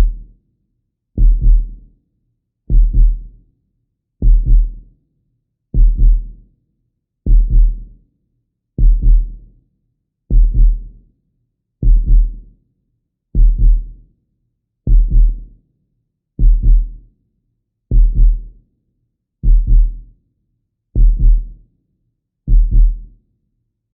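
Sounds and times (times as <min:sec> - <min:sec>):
heartbeat double thump: 0:01.2 - 0:01.7, 0:02.7 - 0:03.2, 0:04.2 - 0:04.7, 0:05.8 - 0:06.2, 0:07.3 - 0:07.8, 0:08.8 - 0:09.2, 0:10.3 - 0:10.8, 0:11.8 - 0:12.3, 0:13.4 - 0:13.8, 0:14.9 - 0:15.4, 0:16.4 - 0:16.9, 0:17.9 - 0:18.4, 0:19.4 - 0:20.0, 0:21.0 - 0:21.4, 0:22.5 - 0:23.0.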